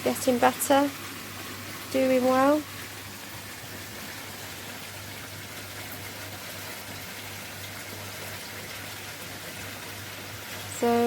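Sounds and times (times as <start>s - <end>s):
water rushing in pond filter: 0.0s - 11.0s.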